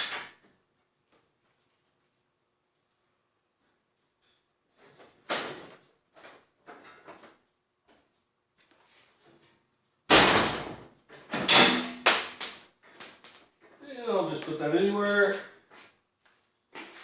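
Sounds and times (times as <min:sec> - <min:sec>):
metal clanks and bangs: 0:10.1 - 0:10.8, 0:11.4 - 0:12.3
metal clattering: 0:11.4 - 0:12.3.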